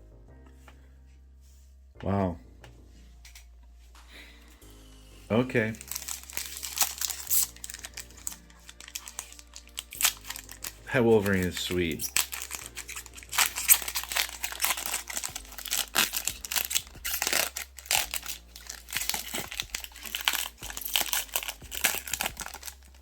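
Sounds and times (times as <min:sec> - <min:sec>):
wrapper crinkling and rustling: 0:05.6 - 0:23.0.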